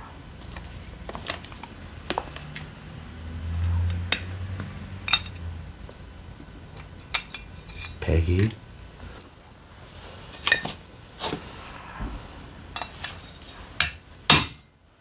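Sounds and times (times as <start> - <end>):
low hum: 0.0 - 9.8
metal tools clinking: 5.0 - 5.5, 6.7 - 8.6, 10.4 - 10.8.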